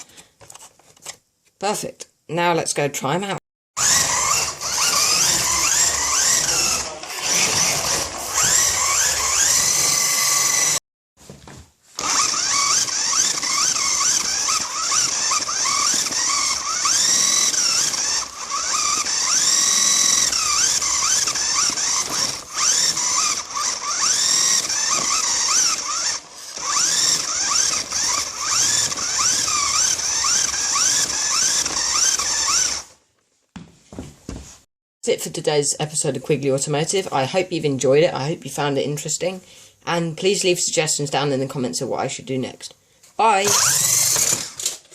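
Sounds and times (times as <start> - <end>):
rc car motor whining: 3.8 - 10.8, 12.0 - 33.0, 43.4 - 44.8.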